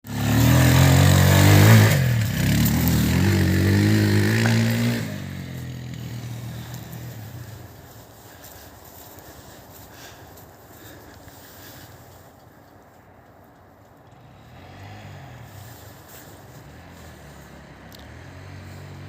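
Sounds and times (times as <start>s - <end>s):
motorcycle engine revving: 0.0s - 7.9s, 14.0s - 19.0s.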